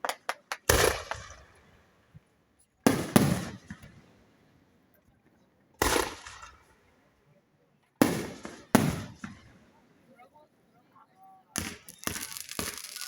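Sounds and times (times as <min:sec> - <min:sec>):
firework shells bursting: 0:11.6 - 0:13.0.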